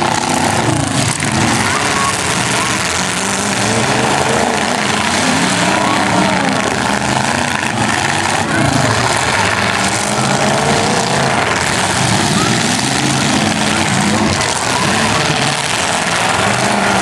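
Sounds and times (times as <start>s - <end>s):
several car engines revving: 0.0s - 17.0s.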